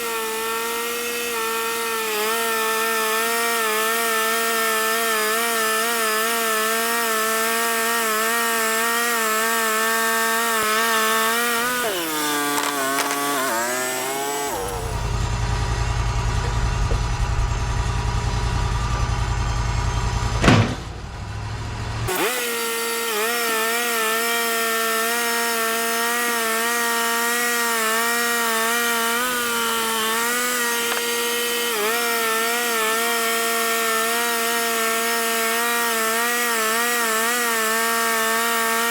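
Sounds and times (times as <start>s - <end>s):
band sawmill cutting log: 0.0s - 38.9s
low steady rumble: 15.0s - 22.1s
sharp loud burst: 20.3s - 21.3s.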